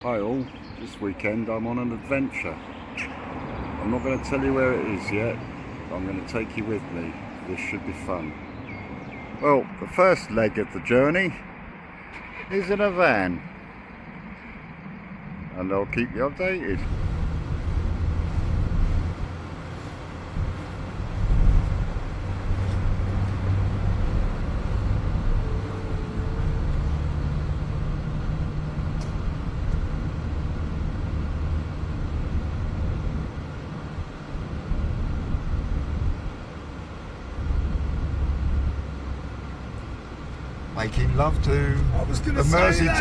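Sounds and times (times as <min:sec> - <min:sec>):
road noise: 0:00.0 - 0:43.0
van engine rumble: 0:16.7 - 0:43.0.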